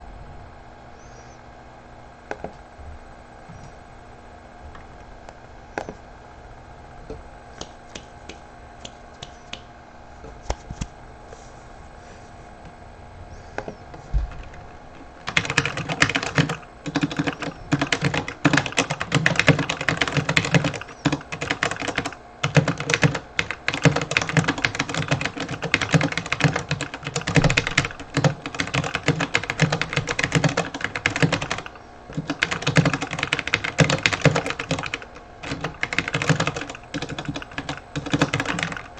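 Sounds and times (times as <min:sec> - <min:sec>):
mechanical keyboard typing: 0:13.6 - 0:38.9.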